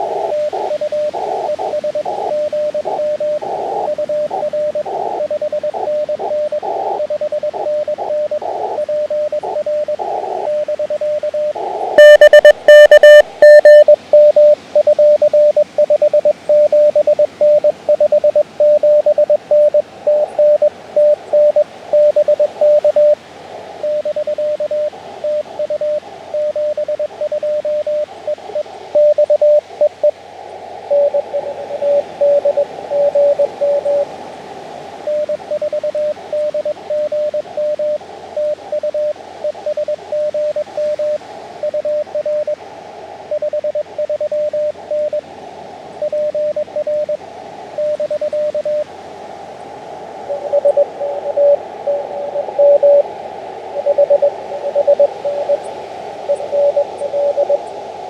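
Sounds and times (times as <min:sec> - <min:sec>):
radio band hiss: 0:00.0 - 0:58.0
morse code beeps: 0:01.7 - 0:23.2, 0:28.9 - 0:30.2, 0:30.9 - 0:34.0, 0:35.1 - 0:42.6, 0:46.0 - 0:47.2, 0:47.8 - 0:48.8, 0:50.3 - 0:53.1, 0:53.8 - 0:55.6, 0:56.3 - 0:57.6.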